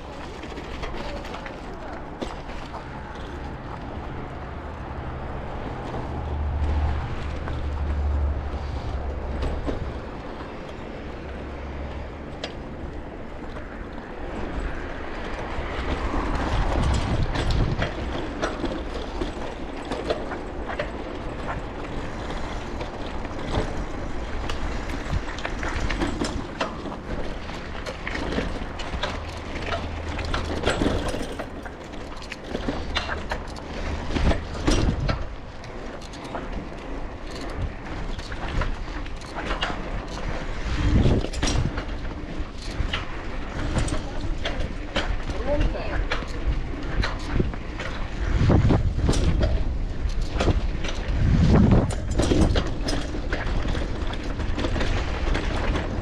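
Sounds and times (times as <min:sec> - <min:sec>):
bicycle rattling and clicking: 0:00.0 - 0:56.0
wind buffeting microphone: 0:00.0 - 0:56.0.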